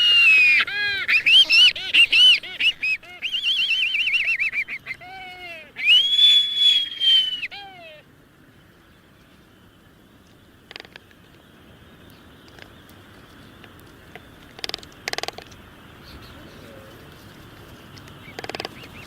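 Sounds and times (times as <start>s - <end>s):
faint bird chirps: 0.0s - 9.8s, 14.2s - 19.0s
forest background hiss: 0.0s - 19.0s
bird rattling calls: 13.3s - 16.6s, 17.5s - 19.0s.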